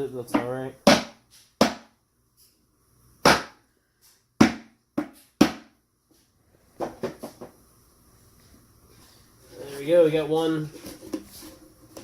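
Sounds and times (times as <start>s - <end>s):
hammer striking wood: 0.3s - 1.9s, 3.2s - 3.6s, 4.4s - 5.8s.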